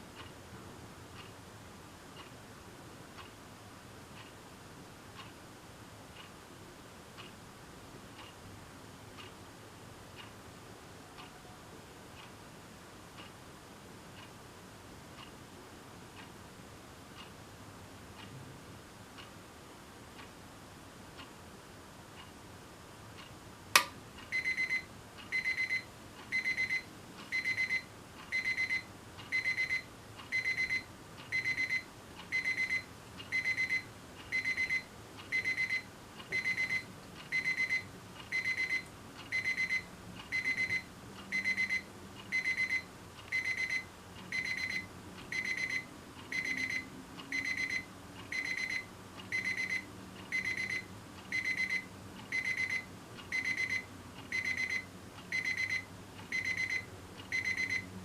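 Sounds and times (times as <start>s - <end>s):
alarm clock beeping: 24.3s - 57.9s
alarm clock click: 36.4s - 40.8s.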